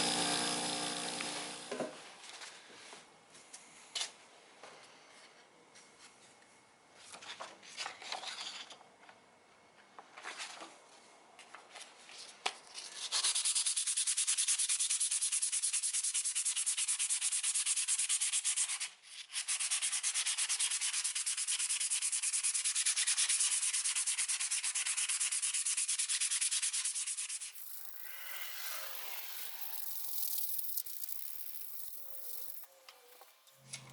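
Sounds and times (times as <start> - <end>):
hand sanding strokes: 13.0 - 32.6.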